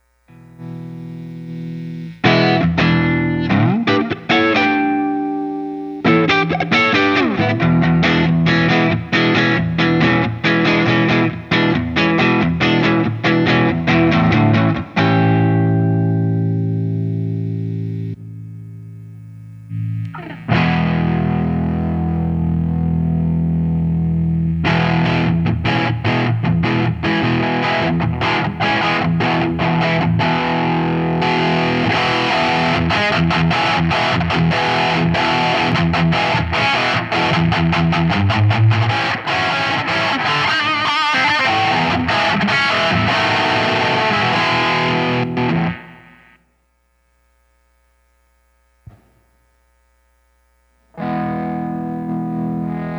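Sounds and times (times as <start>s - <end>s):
distorted electric guitar riffing: 0.0s - 46.5s, 50.9s - 52.9s.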